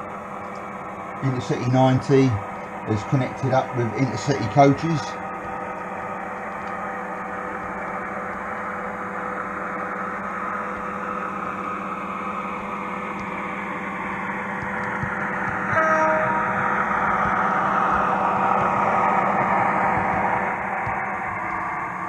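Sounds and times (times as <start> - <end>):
model train rumbling on track: 1.2 - 7.6, 13.4 - 22.0
model train horn blast: 15.7 - 16.7.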